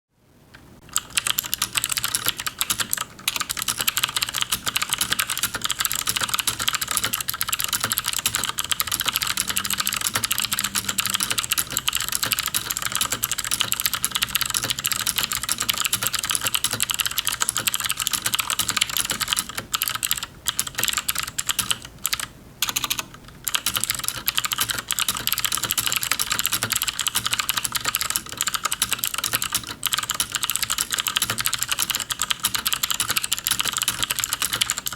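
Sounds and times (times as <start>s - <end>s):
mechanical keyboard typing: 0.9s - 34.9s.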